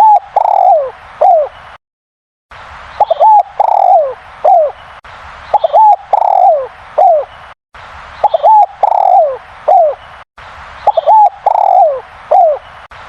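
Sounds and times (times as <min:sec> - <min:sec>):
dove cooing: 0:00.0 - 0:01.6, 0:03.0 - 0:04.8, 0:05.6 - 0:07.3, 0:08.2 - 0:10.0, 0:10.9 - 0:12.7.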